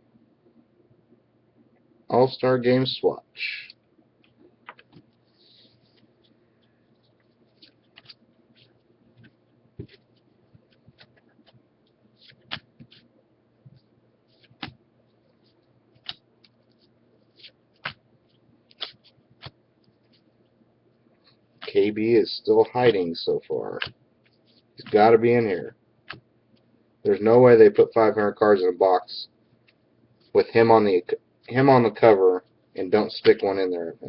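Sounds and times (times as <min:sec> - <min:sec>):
cards flicking: 0:07.5 - 0:11.6, 0:12.2 - 0:13.1, 0:14.3 - 0:14.8, 0:16.0 - 0:16.6, 0:17.4 - 0:18.0, 0:18.7 - 0:20.1, 0:23.7 - 0:25.1.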